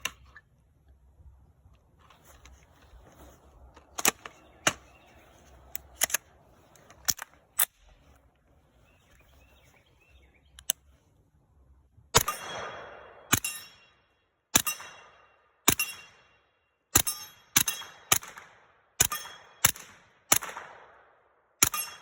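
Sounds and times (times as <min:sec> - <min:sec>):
suppressed gunshots: 0:12.2 - 0:13.8, 0:17.0 - 0:22.0.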